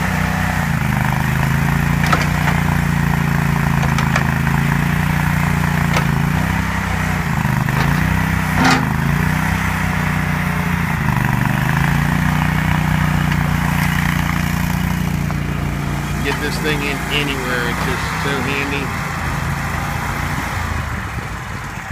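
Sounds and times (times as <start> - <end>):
gasoline engine running: 0.0 - 21.9
sharp knocks: 2.0 - 2.8, 3.6 - 4.6, 5.8 - 6.6.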